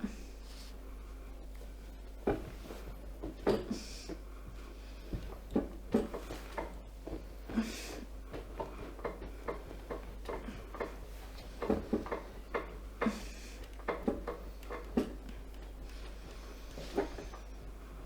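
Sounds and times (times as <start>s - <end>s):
soft taps and knocks: 8.3s - 17.7s.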